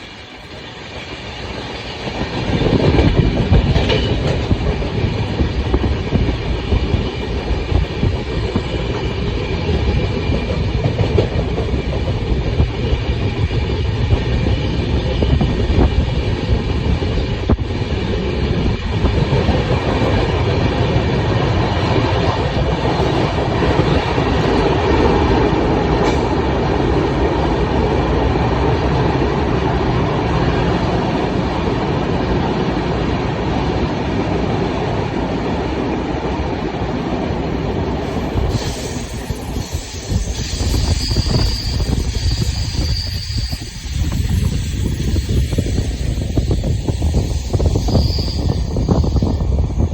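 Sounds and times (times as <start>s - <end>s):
train wheels rumbling on rails: 0.0s - 49.9s.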